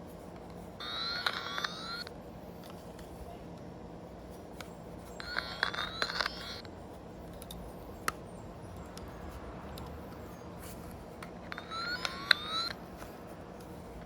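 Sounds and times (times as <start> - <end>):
electronic tester chirps: 0.8 - 2.1, 5.1 - 6.7, 11.5 - 12.8.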